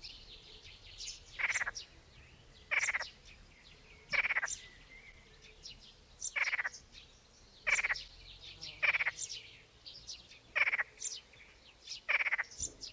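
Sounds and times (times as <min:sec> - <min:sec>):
faint high bird chirps: 0:00.0 - 0:12.9
frog croaking: 0:01.4 - 0:01.8, 0:02.7 - 0:03.1, 0:04.1 - 0:04.6, 0:06.4 - 0:06.8, 0:07.6 - 0:08.0, 0:08.8 - 0:09.2, 0:10.6 - 0:10.9, 0:12.1 - 0:12.5.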